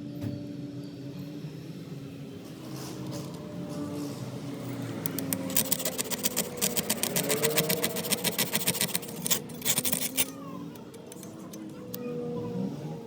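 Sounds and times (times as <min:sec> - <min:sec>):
rapid mechanical clicking: 0:05.0 - 0:12.0.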